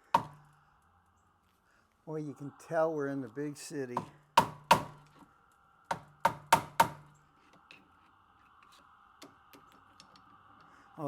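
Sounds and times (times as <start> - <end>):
sharp knocks on door hardware: 4.0 - 5.0, 5.9 - 7.1.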